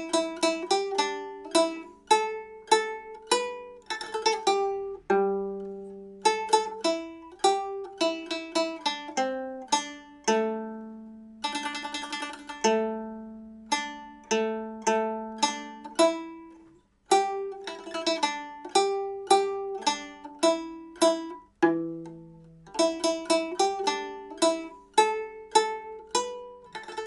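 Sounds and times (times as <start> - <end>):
plucked lute melody: 0.0 - 27.0.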